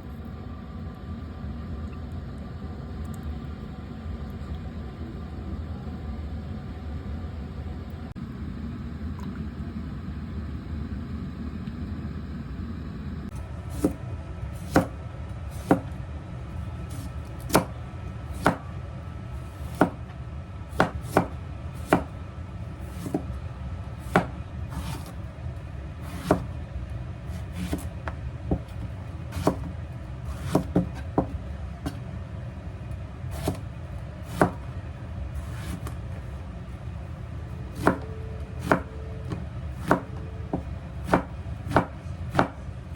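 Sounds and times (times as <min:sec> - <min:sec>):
knife chopping on cutting board: 0:13.7 - 0:14.0, 0:14.6 - 0:16.0, 0:16.9 - 0:18.7, 0:19.4 - 0:20.1, 0:20.7 - 0:22.2, 0:22.8 - 0:23.4, 0:24.0 - 0:25.2, 0:26.0 - 0:26.6, 0:27.3 - 0:32.1, 0:33.3 - 0:34.7, 0:35.4 - 0:36.1, 0:37.7 - 0:42.6.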